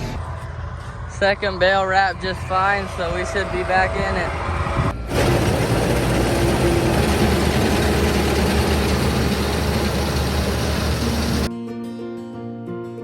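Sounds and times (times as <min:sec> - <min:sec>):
tractor engine running: 0:04.6 - 0:11.5
round baler working: 0:05.0 - 0:11.5.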